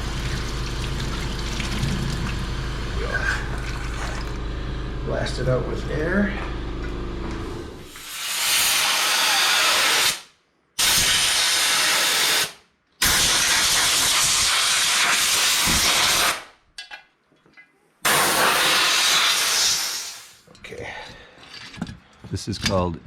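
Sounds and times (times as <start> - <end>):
compressed air hissing: 7.9 - 10.2, 18.1 - 20.4
short air puffs: 18.1 - 20.4.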